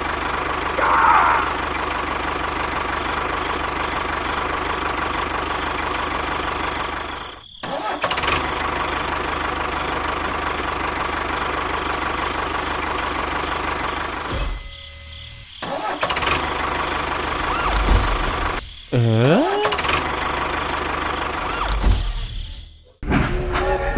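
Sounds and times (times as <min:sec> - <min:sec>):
motor running with a whine: 0:11.8 - 0:23.0.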